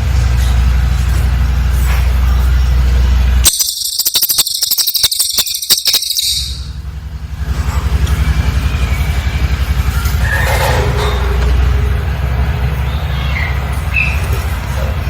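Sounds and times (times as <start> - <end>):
low pulsing drone: 0.0 - 15.0
bird high-pitched trill: 3.4 - 6.8.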